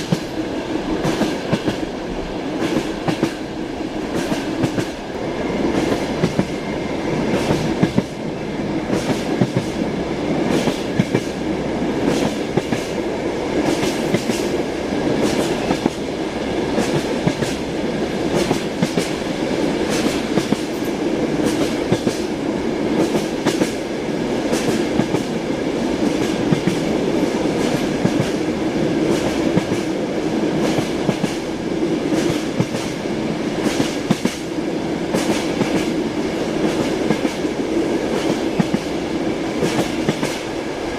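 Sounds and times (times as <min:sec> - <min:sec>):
train running rumble: 0:00.0 - 0:40.9
train wheels clattering over rail joints: 0:04.1 - 0:05.1, 0:13.6 - 0:14.6, 0:19.8 - 0:22.3, 0:22.9 - 0:23.8.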